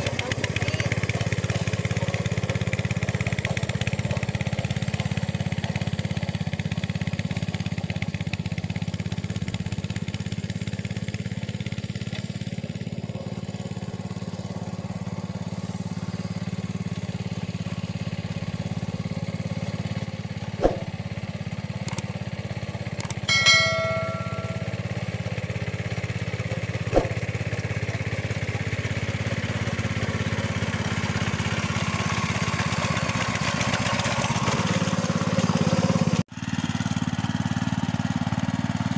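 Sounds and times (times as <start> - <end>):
tractor engine running: 0.0 - 38.9
sharp knocks: 20.6 - 20.9, 26.9 - 27.2
brief ringing tone: 23.3 - 25.2.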